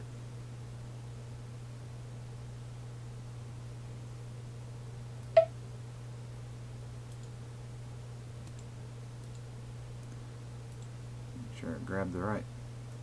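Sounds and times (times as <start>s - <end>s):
low electrical hum: 0.0s - 13.0s
computer mouse clicks: 7.1s - 7.3s, 8.4s - 10.9s.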